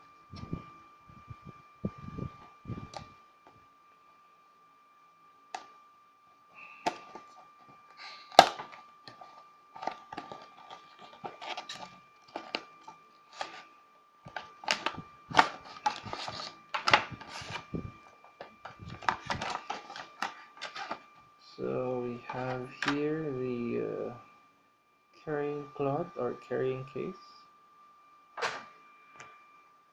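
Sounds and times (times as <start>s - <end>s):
faint high whine: 0.0s - 29.9s
packaging clicks and rustles: 6.6s - 21.2s.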